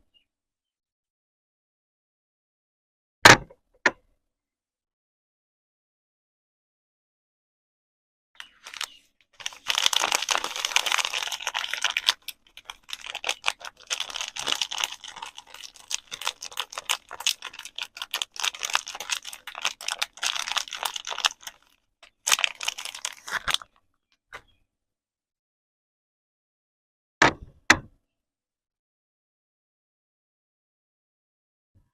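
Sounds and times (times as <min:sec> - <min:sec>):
soap packaging crinkling: 0:08.4 - 0:23.8.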